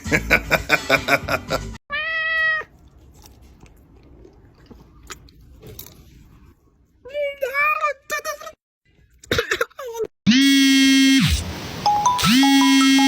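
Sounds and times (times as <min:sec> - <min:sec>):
cat meowing: 0:01.9 - 0:02.7.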